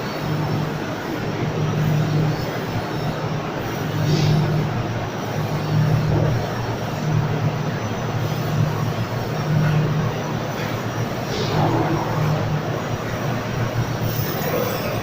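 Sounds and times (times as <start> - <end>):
laser cutter hissing: 0.1 - 15.0.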